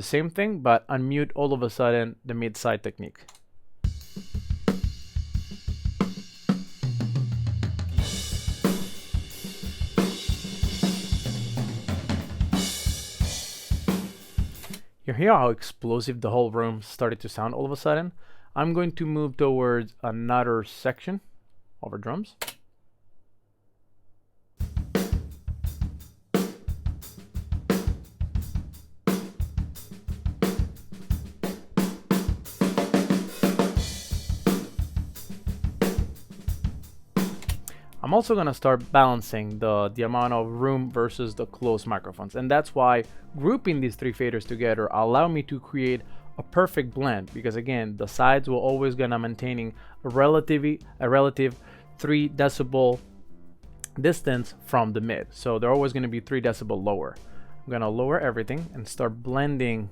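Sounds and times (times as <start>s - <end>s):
drum kit playing groove: 3.8s - 14.9s, 24.6s - 59.9s.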